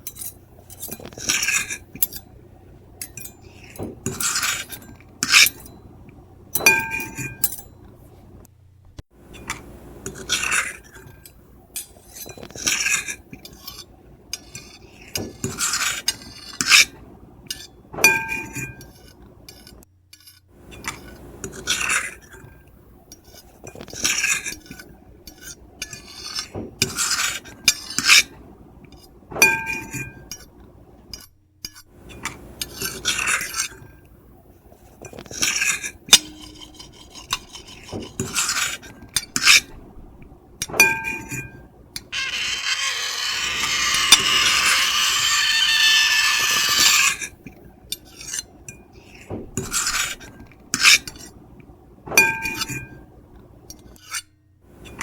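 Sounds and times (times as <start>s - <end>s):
fork and knife scraping plate: 0.0s - 2.3s, 3.1s - 5.8s, 35.0s - 39.7s, 40.8s - 47.4s, 48.0s - 48.5s, 49.1s - 51.3s
cutlery clinking on plate: 6.6s - 7.8s, 18.1s - 19.0s, 40.7s - 41.6s, 52.2s - 53.0s.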